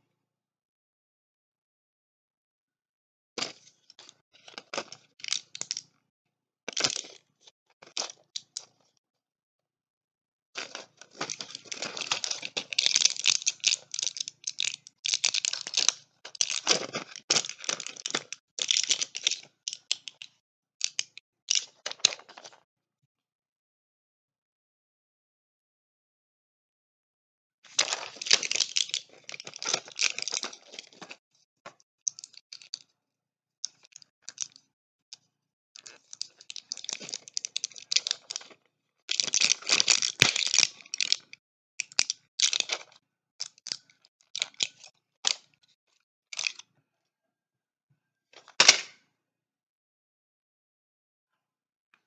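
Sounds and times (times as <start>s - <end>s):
packaging crinkling: 10.6s - 19.3s, 27.8s - 31.2s, 35.8s - 41.2s.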